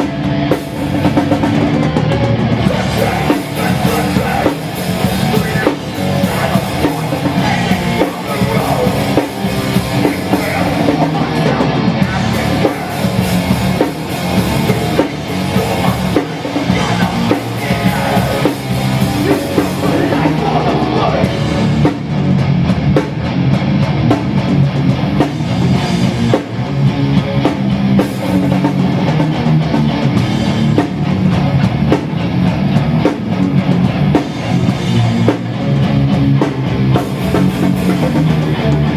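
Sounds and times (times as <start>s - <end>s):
punk band playing live: 0.0s - 38.9s
shouted vocals: 2.6s - 13.3s, 14.7s - 21.4s.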